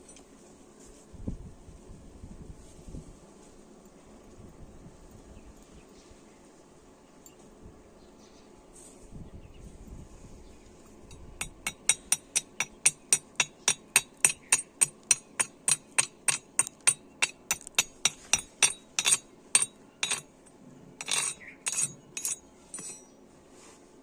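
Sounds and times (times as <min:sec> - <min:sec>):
chipping hammer tapping metal: 0:11.1 - 0:20.2, 0:21.0 - 0:23.1.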